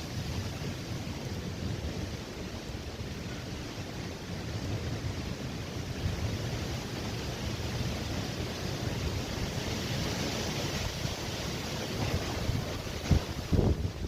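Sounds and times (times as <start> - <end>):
storm wind buffeting microphone: 0.0 - 14.0.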